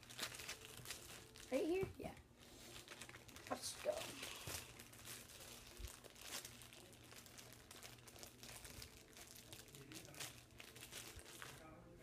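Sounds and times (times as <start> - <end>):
packaging crinkling and rustling: 0.0 - 11.8.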